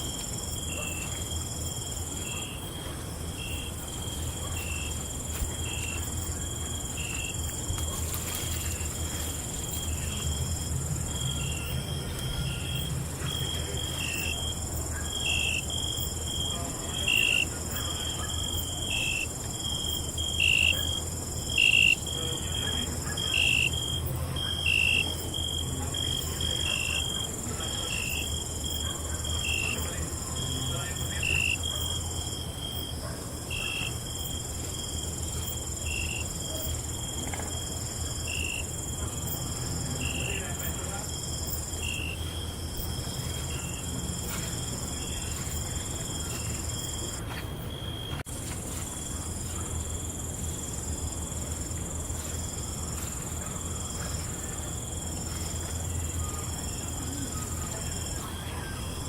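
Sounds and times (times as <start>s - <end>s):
crickets trilling and chirping: 0.0s - 59.0s.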